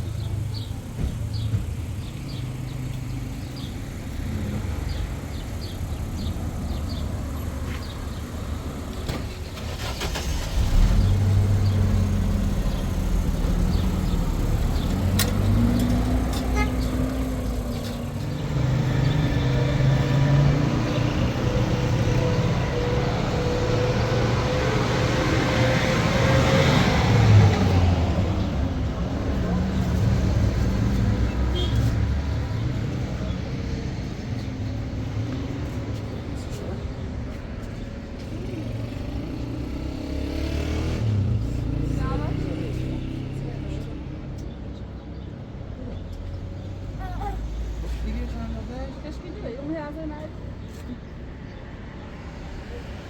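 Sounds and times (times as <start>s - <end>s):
vehicle engine running: 9.6s - 37.0s.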